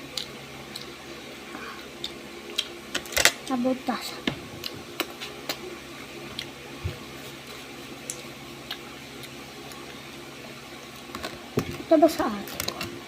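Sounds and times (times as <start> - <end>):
faint steady hum: 0.0 - 13.0
person chewing with wet smacks: 0.1 - 1.0, 1.8 - 2.8, 4.6 - 5.6, 6.3 - 6.6, 8.0 - 10.0.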